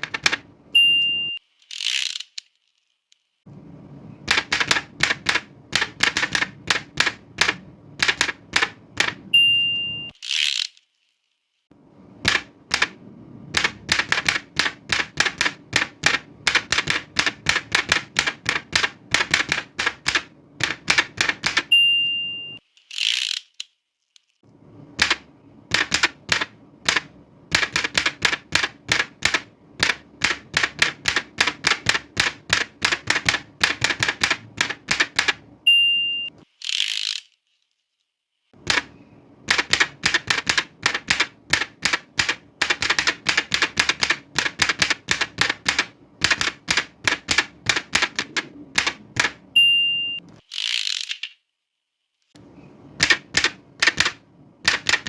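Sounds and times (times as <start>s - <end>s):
typewriter bell ding: 0.8s - 1.4s, 9.4s - 10.1s, 21.7s - 22.6s, 49.6s - 50.2s
typewriter key strikes: 4.3s - 9.3s, 12.2s - 13.0s, 13.6s - 21.7s, 25.0s - 35.4s, 38.6s - 49.4s, 53.0s - 55.0s
typewriter carriage sliding rasp: 13.6s - 21.7s, 25.0s - 35.4s, 38.6s - 49.4s, 53.0s - 55.0s.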